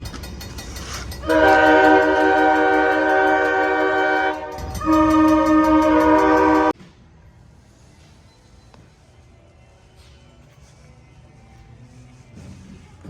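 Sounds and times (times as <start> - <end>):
train chime horn blasts: 1.2 - 6.8.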